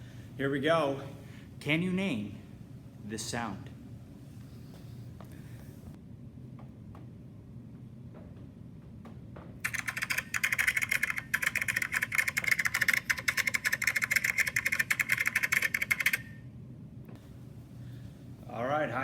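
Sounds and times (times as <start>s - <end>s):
fast dense clicks: 9.6s - 16.3s.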